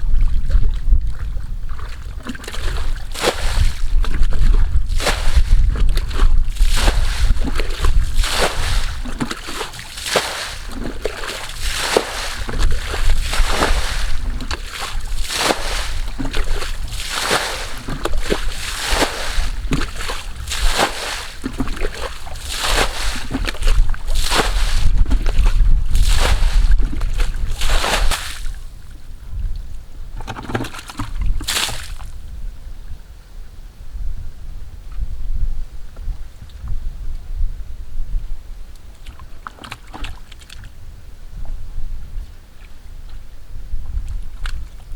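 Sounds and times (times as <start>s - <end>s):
muddy water sloshing and splashing: 0.0s - 28.9s, 30.1s - 32.3s, 38.9s - 40.8s, 43.8s - 44.9s.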